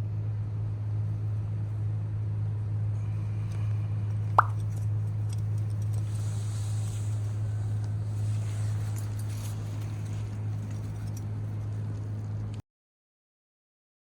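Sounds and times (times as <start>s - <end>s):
short rising blip: 4.4s - 4.6s.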